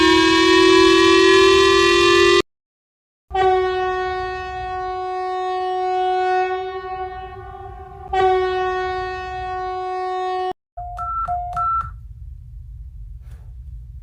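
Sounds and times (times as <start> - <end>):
buzzy emergency alarm tone: 0.0 - 2.4.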